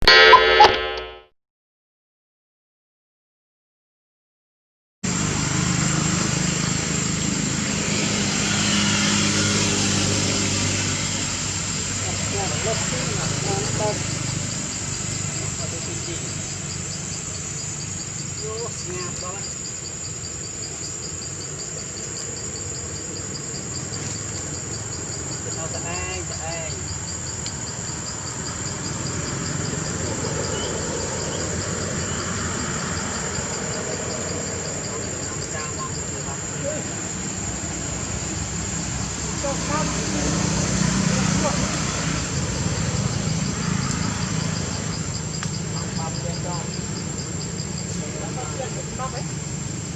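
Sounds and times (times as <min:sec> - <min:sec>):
steady high whine: 0:00.0 - 0:01.3
insects chirping: 0:05.0 - 0:49.9
engine running with low hum: 0:05.1 - 0:49.9.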